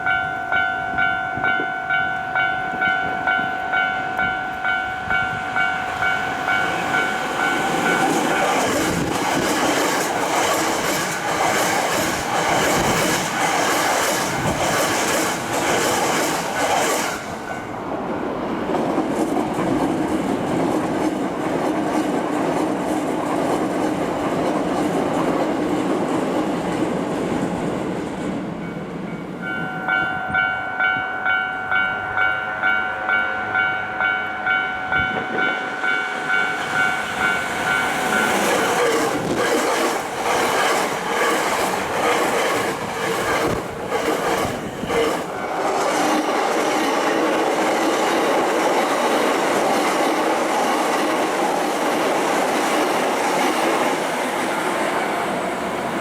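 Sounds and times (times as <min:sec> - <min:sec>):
level-crossing warning bell: 0:00.0 - 0:17.8, 0:28.6 - 0:42.4, 0:45.2 - 0:46.8, 0:54.3 - 0:56.0
train wheels clattering on rails: 0:00.0 - 0:17.8, 0:18.6 - 0:31.8, 0:34.2 - 0:56.0
low train rumble: 0:00.0 - 0:56.0.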